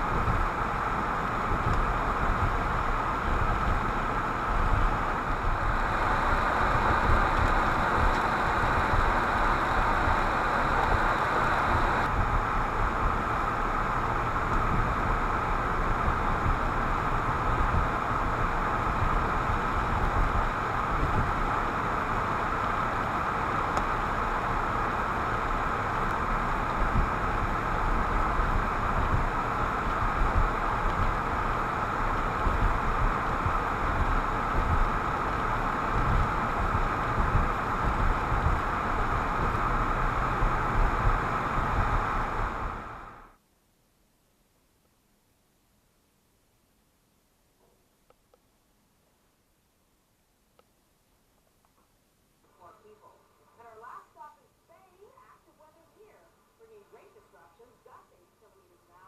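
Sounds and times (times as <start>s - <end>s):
car engine hum: 0.0s - 43.3s
tyres on snowy road: 0.0s - 43.3s.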